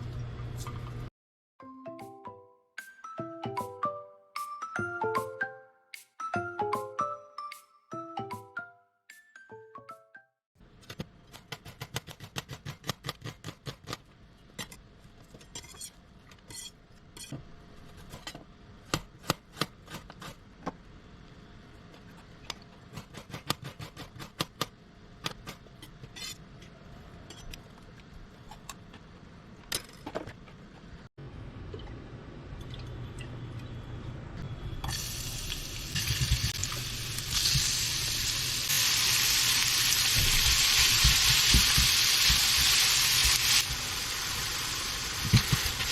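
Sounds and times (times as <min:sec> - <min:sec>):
frying hiss: 0:34.8 - 0:45.9.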